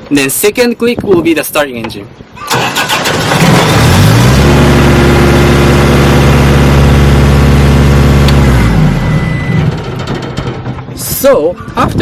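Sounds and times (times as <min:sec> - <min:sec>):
skid steer engine running: 0:03.4 - 0:10.8.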